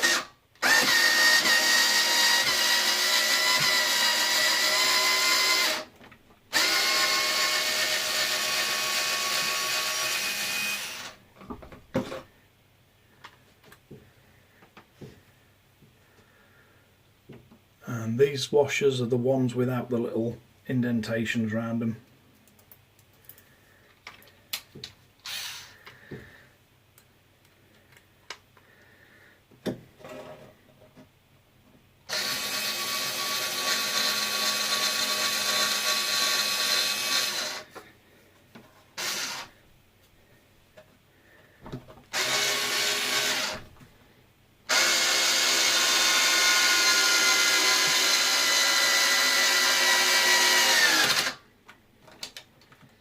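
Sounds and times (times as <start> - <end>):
power screwdriver running: 0.0 - 5.9, 6.5 - 11.2, 25.2 - 25.7, 32.1 - 37.7, 39.0 - 39.5, 42.1 - 43.6, 44.7 - 51.4.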